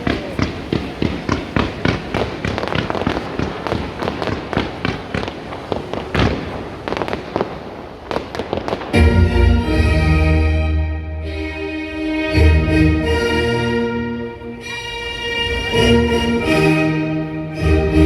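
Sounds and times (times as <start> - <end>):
fireworks bangs and crackles: 0.0 - 9.2.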